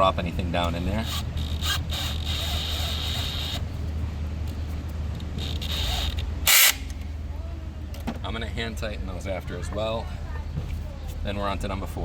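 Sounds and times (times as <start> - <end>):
low mechanical hum: 0.0 - 12.0
hand tool clicks and rustles: 4.4 - 7.1.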